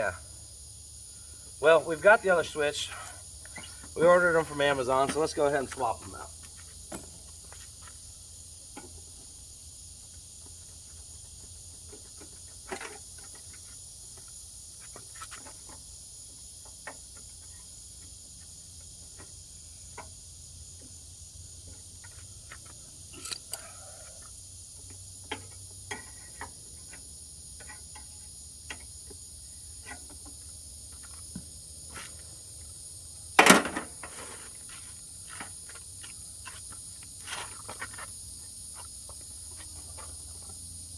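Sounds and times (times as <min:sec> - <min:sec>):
insects chirring: 0:00.0 - 0:40.9
metal clank: 0:33.4 - 0:34.3.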